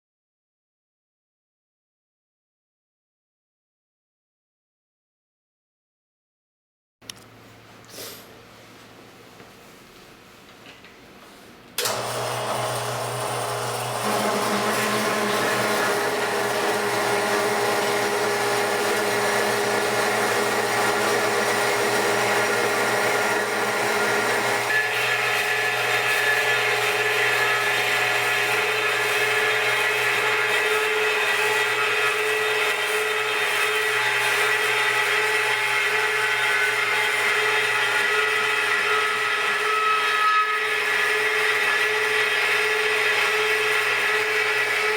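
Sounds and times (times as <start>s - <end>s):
band saw cutting steel pipe: 11.8s - 44.9s.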